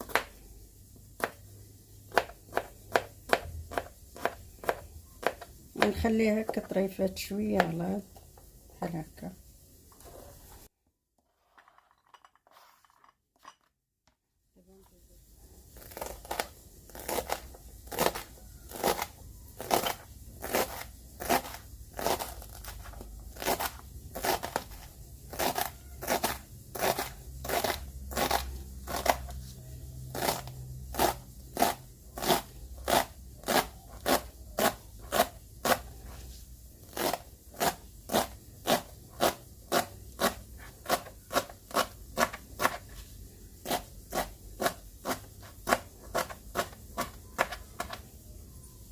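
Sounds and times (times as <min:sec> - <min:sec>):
knife chopping on cutting board: 0:00.0 - 0:00.3, 0:02.1 - 0:05.9.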